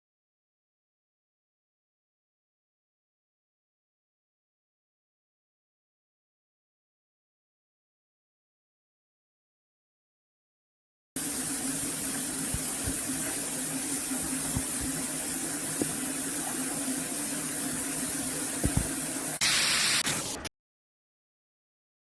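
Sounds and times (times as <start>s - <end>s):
shower water spraying: 11.2s - 20.5s.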